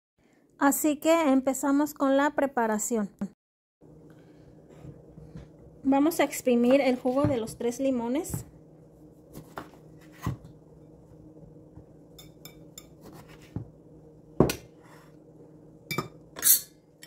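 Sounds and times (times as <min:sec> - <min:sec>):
faint steady hum: 0:03.8 - 0:17.0.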